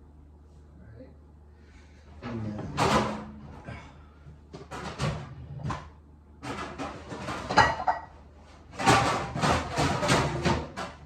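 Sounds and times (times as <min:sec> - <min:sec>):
pan clattering in cabinet: 0:04.6 - 0:11.0.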